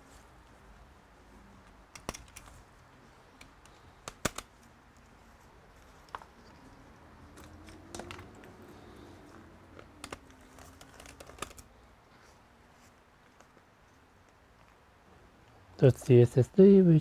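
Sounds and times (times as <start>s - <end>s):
laptop casing clicks and taps: 1.9s - 2.6s, 3.4s - 4.7s, 7.3s - 11.7s.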